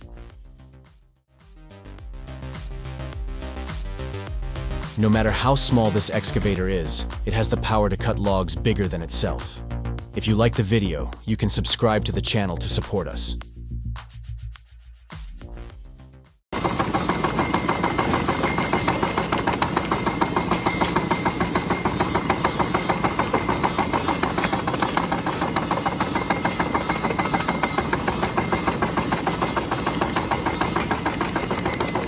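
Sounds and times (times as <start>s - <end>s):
engine-driven machine running: 1.8s - 10.1s, 16.6s - 32.0s.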